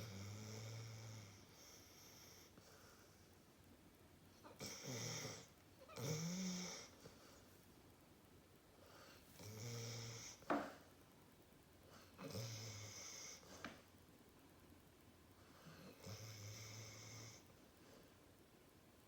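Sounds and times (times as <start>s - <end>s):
dog snoring: 0.0s - 2.6s, 4.4s - 7.1s, 9.0s - 10.8s, 12.0s - 13.6s, 15.6s - 17.5s.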